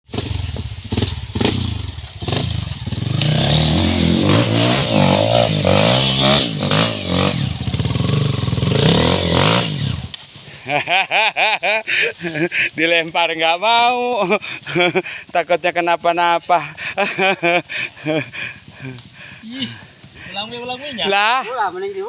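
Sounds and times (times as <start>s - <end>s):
engine running: 0.1s - 10.6s
voices: 11.7s - 22.0s
person speaking loudly: 12.8s - 14.4s.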